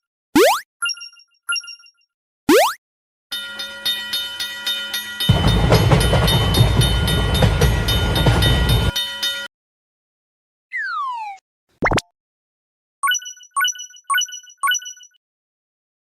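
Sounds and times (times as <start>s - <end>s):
railroad crossing bell ringing: 3.3s - 9.5s
train passing loudly: 3.4s - 9.5s.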